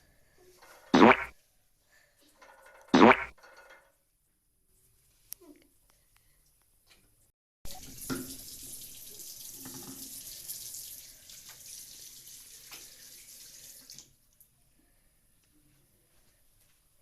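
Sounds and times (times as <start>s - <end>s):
tap water running into sink: 7.7s - 14.1s.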